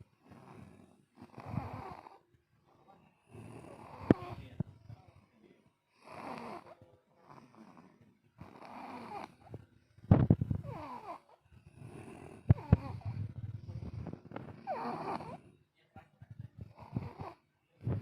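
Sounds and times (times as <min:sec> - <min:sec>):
person snoring: 0:00.2 - 0:02.2, 0:03.3 - 0:04.5, 0:10.6 - 0:15.5.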